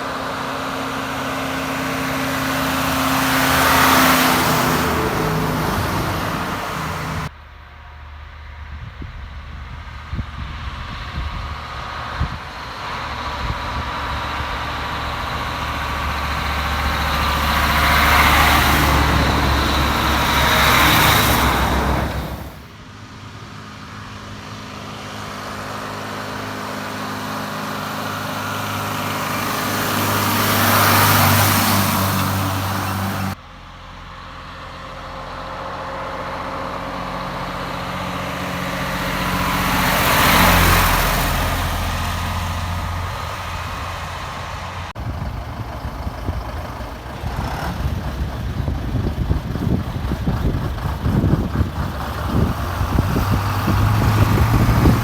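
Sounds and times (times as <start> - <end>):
diesel lorries driving past: 0.0 - 55.0
diesel lorry engine pulsing: 0.0 - 55.0.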